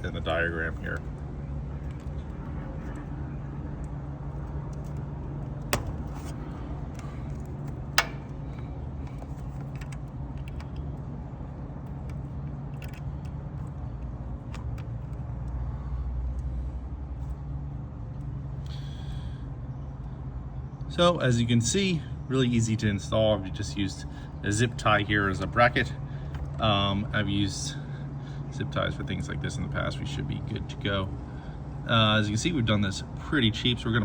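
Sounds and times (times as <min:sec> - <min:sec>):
low outdoor rumble: 0:00.0 - 0:34.0
metallic clicks of connectors: 0:07.0 - 0:11.0.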